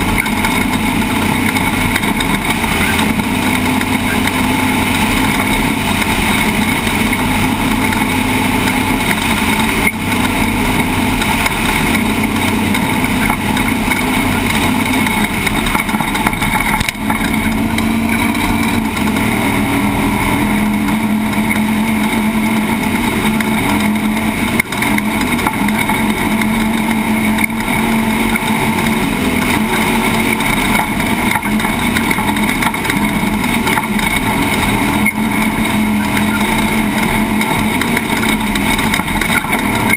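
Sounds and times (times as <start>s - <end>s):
driving noise: 0.0s - 39.9s
truck engine running hard: 0.0s - 39.9s.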